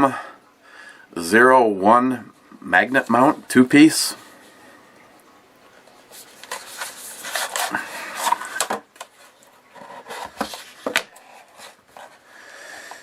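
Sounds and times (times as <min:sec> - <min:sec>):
packaging rustling: 0:05.9 - 0:12.2.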